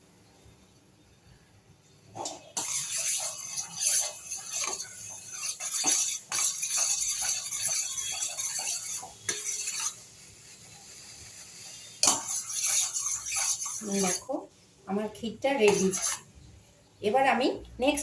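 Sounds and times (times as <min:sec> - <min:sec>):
spoon scraping a saucepan: 0:02.2 - 0:14.4, 0:15.6 - 0:16.4
hiss of cooking milk: 0:02.2 - 0:14.9, 0:15.6 - 0:16.4.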